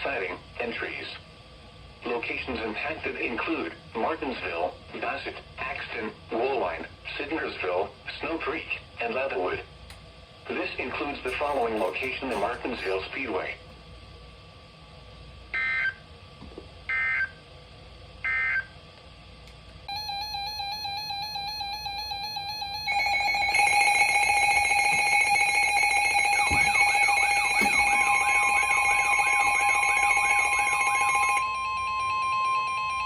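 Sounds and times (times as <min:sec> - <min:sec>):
shrill data bursts: 0:19.9 - 0:31.4
electronic alert alarms beeping: 0:19.9 - 0:33.0
steady attention tone: 0:19.9 - 0:33.0.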